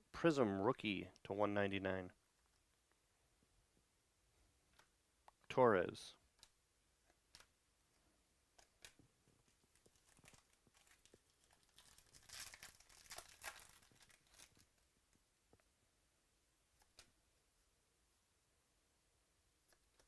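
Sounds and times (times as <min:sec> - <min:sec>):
cards crinkling and rustling: 0:08.6 - 0:14.8.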